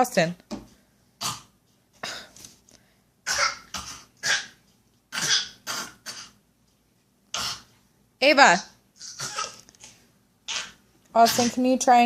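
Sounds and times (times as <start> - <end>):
person fake coughing: 3.3 - 4.5, 9.0 - 9.6, 10.5 - 11.6.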